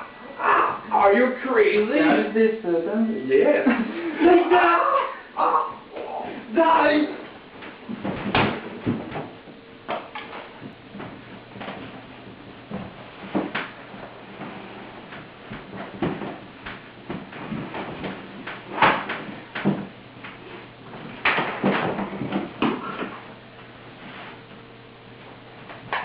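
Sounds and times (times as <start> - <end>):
faint steady hum: 0.0 - 26.0
irregular knocks and clatters: 7.6 - 20.4.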